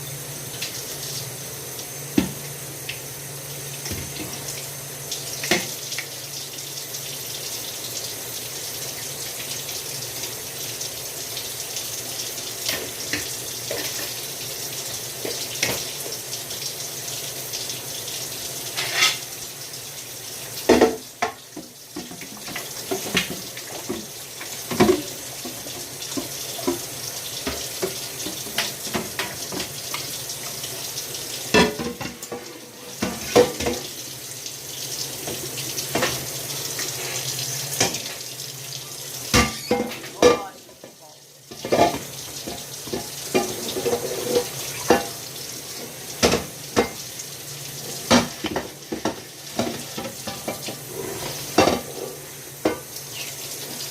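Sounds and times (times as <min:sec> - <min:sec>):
tap running into sink: 0:02.1 - 0:03.0, 0:03.8 - 0:04.6, 0:05.4 - 0:06.1, 0:15.2 - 0:16.2, 0:20.6 - 0:30.6, 0:31.5 - 0:34.0, 0:39.3 - 0:45.2, 0:45.8 - 0:47.1, 0:48.0 - 0:51.9
dishes and utensils clinking: 0:18.7 - 0:19.3, 0:31.5 - 0:33.9, 0:39.3 - 0:40.6, 0:41.5 - 0:45.2, 0:48.1 - 0:52.9.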